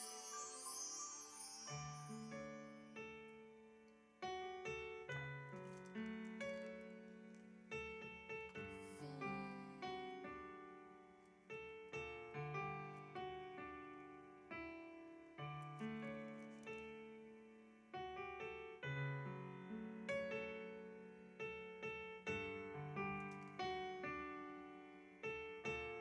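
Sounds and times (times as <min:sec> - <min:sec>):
piano single notes and chords: 0:00.0 - 0:26.0.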